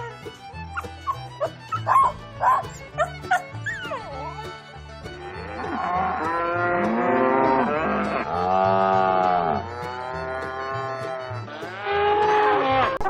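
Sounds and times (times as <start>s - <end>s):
background music: 0.0s - 12.9s
cow mooing: 5.5s - 11.0s, 11.6s - 13.0s.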